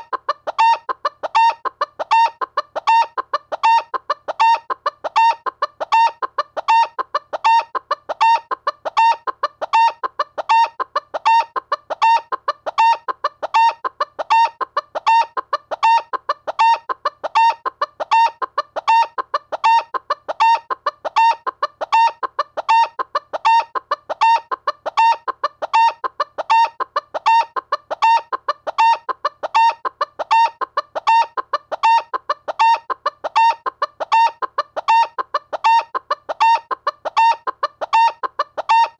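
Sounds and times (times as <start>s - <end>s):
chicken clucking: 0.0s - 38.9s.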